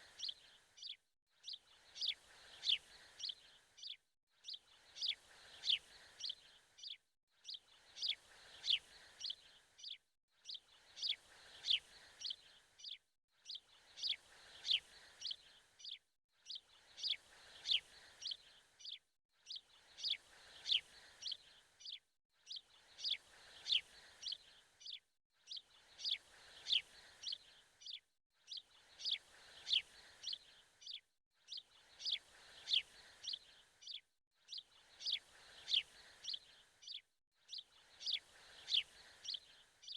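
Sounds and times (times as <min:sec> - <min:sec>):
birds chirping: 0:28.9 - 0:39.9.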